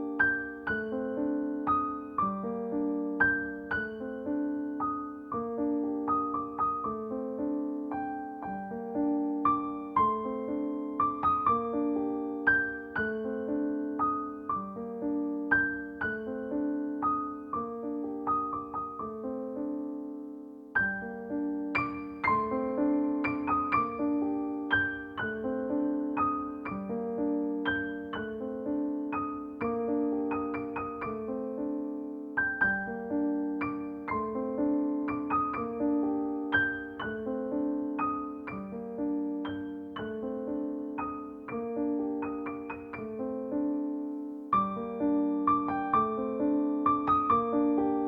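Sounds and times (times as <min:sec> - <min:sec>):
gentle piano tune: 0:00.0 - 0:48.0.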